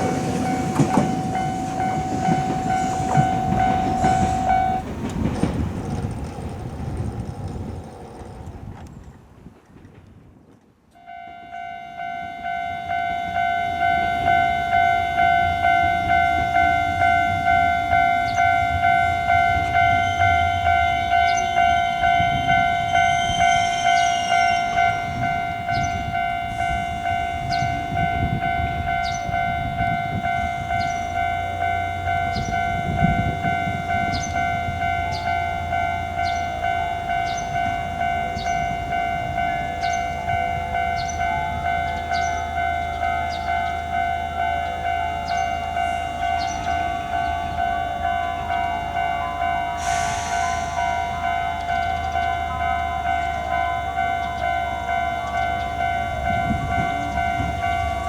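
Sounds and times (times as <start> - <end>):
higher alarm tone: 0.0 - 4.9, 11.0 - 58.0
level-crossing alarm ringing: 0.0 - 8.3, 11.0 - 58.0
train rumbling by: 0.0 - 10.4, 11.4 - 58.0
wheels clicking over rail joints: 0.0 - 11.0.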